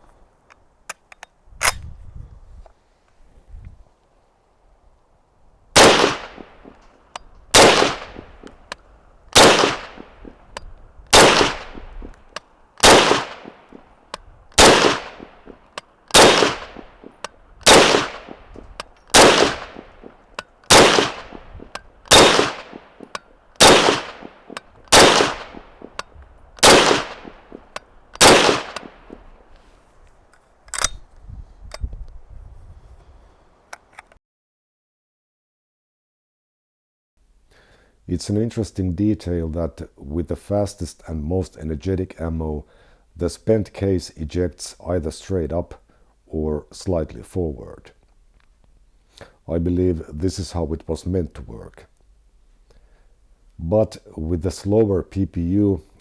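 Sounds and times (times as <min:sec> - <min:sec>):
rifle gunshots with echo: 0:05.8 - 0:06.8, 0:07.5 - 0:08.4, 0:09.4 - 0:10.4, 0:11.1 - 0:12.1, 0:12.8 - 0:13.9, 0:14.6 - 0:26.0, 0:26.6 - 0:29.2.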